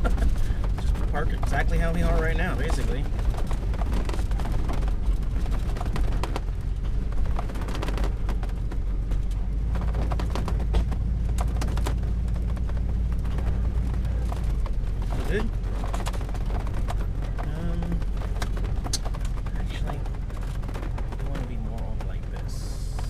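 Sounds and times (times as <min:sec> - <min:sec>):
motorhome engine running: 0:00.0 - 0:23.0
tires crackling over stony ground: 0:00.0 - 0:23.0.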